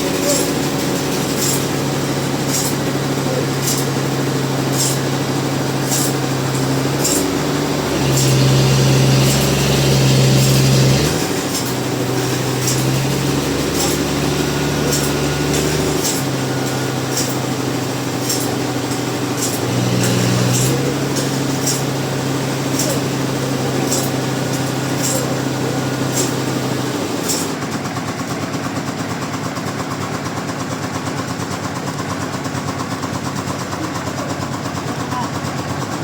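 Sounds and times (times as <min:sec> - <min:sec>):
sawmill machinery engine hum: 0:00.0 - 0:36.0.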